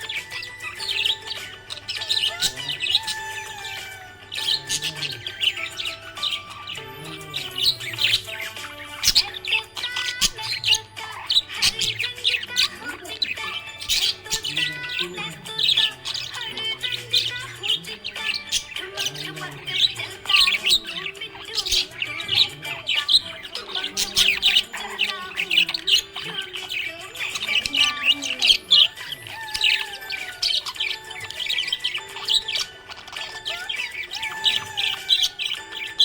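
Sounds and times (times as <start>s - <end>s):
budgerigar chirping and chattering: 0.0s - 36.0s
music: 0.0s - 36.0s.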